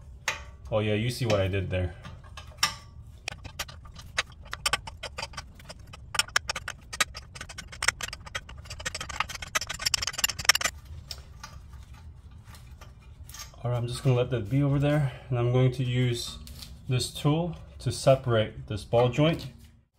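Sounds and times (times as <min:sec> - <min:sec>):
scraping rustle: 0:03.0 - 0:15.2.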